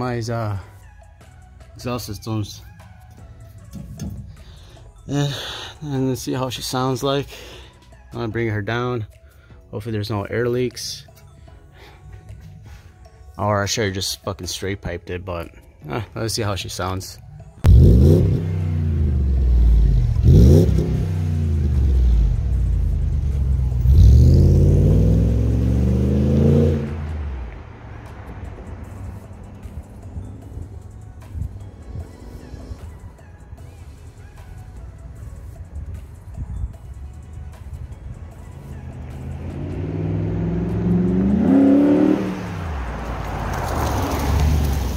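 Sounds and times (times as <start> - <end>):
car engine revving: 17.6 - 33.2, 38.2 - 44.9.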